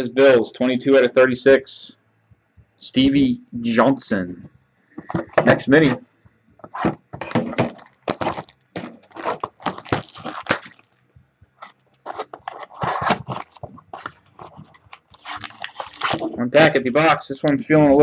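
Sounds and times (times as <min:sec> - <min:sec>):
cardboard and wrapping tearing: 0:06.7 - 0:11.0, 0:11.6 - 0:16.4.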